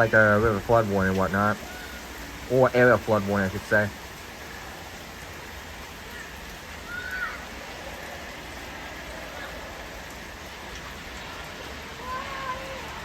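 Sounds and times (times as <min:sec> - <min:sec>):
heavy rain hissing: 0:00.0 - 0:13.0
faint distant high cry: 0:01.6 - 0:02.2, 0:06.0 - 0:07.6, 0:12.0 - 0:13.0.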